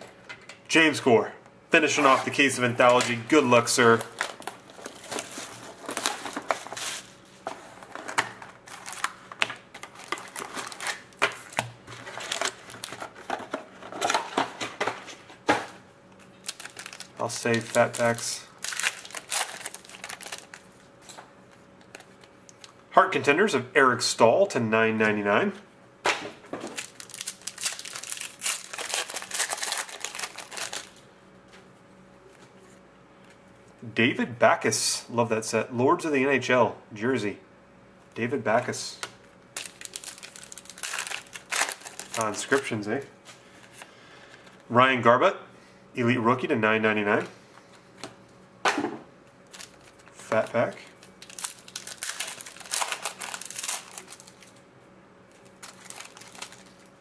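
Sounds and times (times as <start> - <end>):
wrappers tearing and crinkling: 2.2 - 13.4, 16.2 - 21.0, 26.7 - 31.0, 39.6 - 42.7, 49.4 - 54.6, 55.3 - 57.0.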